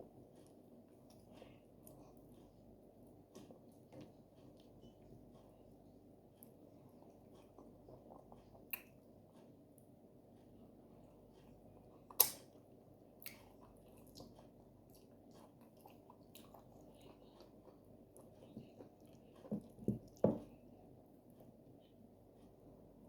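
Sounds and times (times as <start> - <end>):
wet chewing and squishing: 6.4 - 9.5, 13.2 - 20.6.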